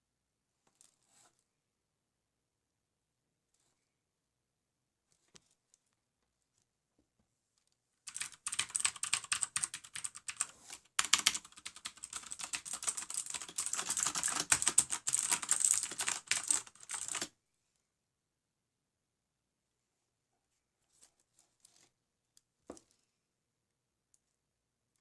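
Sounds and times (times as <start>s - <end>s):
mechanical keyboard clicking: 8.1s - 17.3s.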